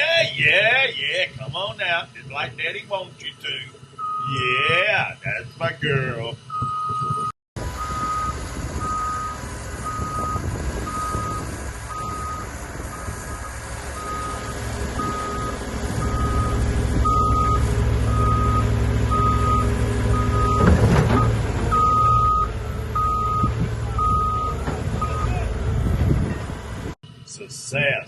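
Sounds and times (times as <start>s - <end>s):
travel alarm beeping: 4.0s - 4.4s, 6.5s - 12.6s, 14.0s - 25.4s
diesel engine working hard: 7.6s - 27.0s.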